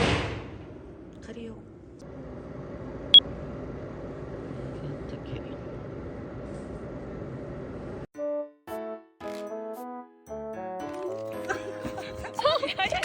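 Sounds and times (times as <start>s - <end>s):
steady rumbling noise: 0.0s - 8.1s
background music: 8.2s - 13.0s.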